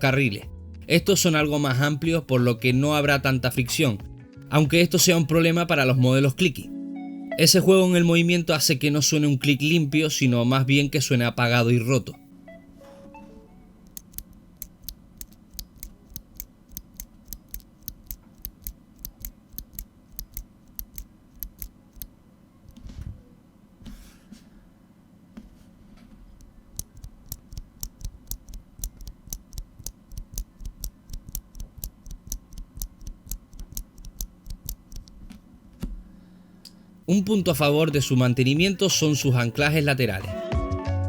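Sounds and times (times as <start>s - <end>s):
mechanical keyboard switch clicks: 13.8s - 22.1s, 26.4s - 35.2s.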